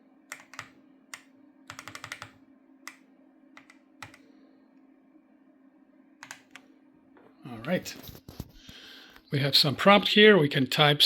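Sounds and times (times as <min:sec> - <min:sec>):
steady low hum: 0:00.0 - 0:11.0
mechanical keyboard keystrokes: 0:00.3 - 0:03.0, 0:03.6 - 0:04.2, 0:06.2 - 0:06.6.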